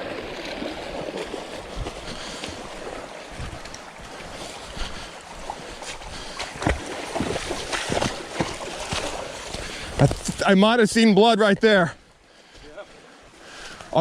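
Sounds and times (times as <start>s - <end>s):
footsteps splashing in water: 0.0s - 10.5s
creek water running: 0.0s - 14.0s.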